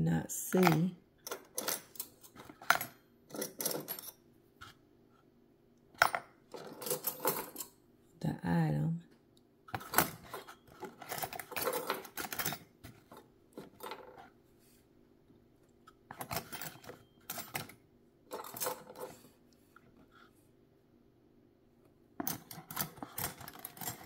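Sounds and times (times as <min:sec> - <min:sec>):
small metal parts clinking: 0:00.6 - 0:04.2, 0:06.0 - 0:07.8, 0:09.8 - 0:14.2, 0:16.1 - 0:19.2, 0:22.2 - 0:24.0.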